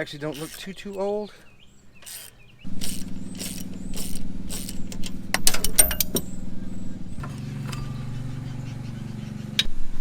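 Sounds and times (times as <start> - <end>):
metallic clinks of hand tools: 0.0 - 1.1, 2.0 - 6.4
ratchet click: 0.0 - 1.1, 2.0 - 6.4
lawn mower engine droning: 0.0 - 9.8.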